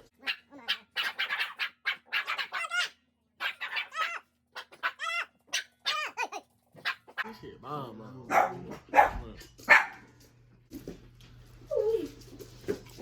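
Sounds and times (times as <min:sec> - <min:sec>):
dog whining: 0:00.2 - 0:07.2.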